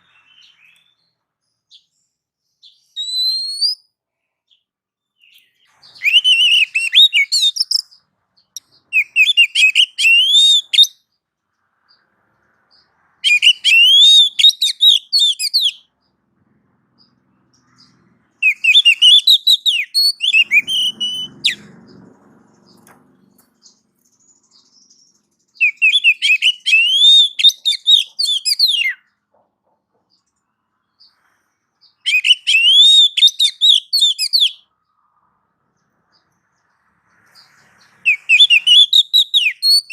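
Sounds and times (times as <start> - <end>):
bird singing whistled phrases: 0.0 - 1.8, 2.6 - 3.9, 5.2 - 8.0, 8.6 - 11.1, 13.2 - 15.9, 18.4 - 21.7, 23.6 - 29.1, 31.8 - 34.7, 38.0 - 39.9.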